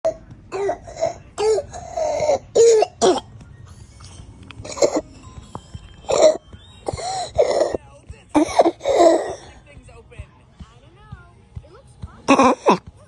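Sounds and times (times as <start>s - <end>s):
child's barking cough: 0.1s - 3.3s.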